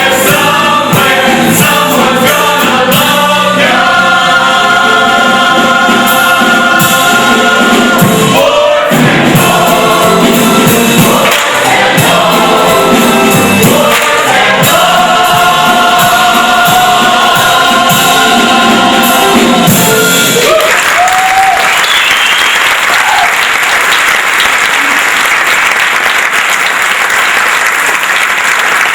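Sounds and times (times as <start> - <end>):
voices singing: 0.0 - 20.5
audience applauding: 11.1 - 11.9, 13.8 - 14.5, 20.3 - 28.9.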